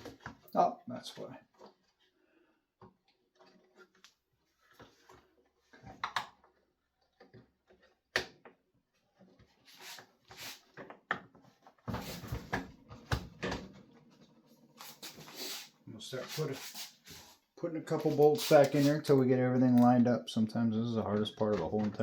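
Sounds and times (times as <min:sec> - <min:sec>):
plastic parts clicking and knocking: 0:04.7 - 0:09.5, 0:21.0 - 0:22.0.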